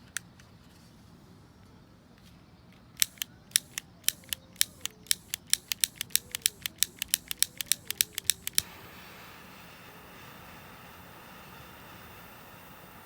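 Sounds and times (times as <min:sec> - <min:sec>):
rapid sharp clicks: 0:03.0 - 0:08.7.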